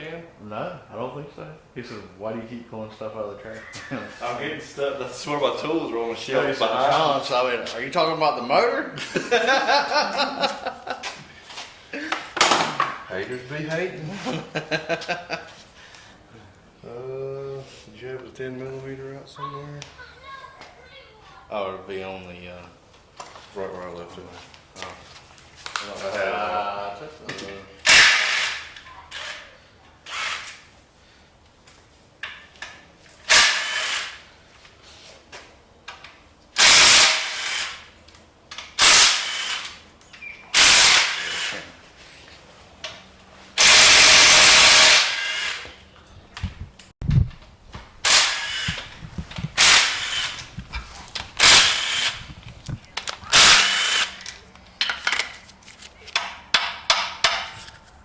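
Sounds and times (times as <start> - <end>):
power tool running in bursts: 36.6 - 37.9, 38.8 - 39.8, 40.6 - 41.6, 43.6 - 45.7, 48.0 - 50.6, 51.4 - 52.3, 53.3 - 54.2
clicks of hand tools and parts: 48.0 - 58.0.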